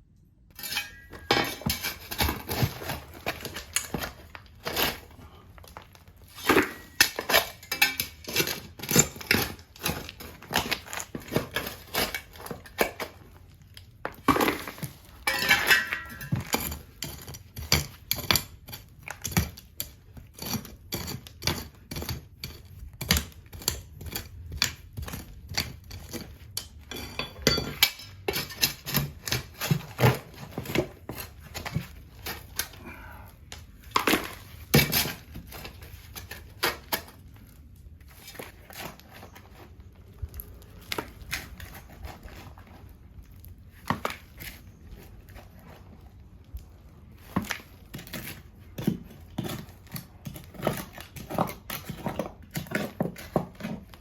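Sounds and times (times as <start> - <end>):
tool scraping: 0.5 - 13.2, 14.1 - 32.8
metal tools clinking on hard material: 0.6 - 2.0, 6.6 - 9.2, 15.2 - 18.4, 25.5 - 29.1.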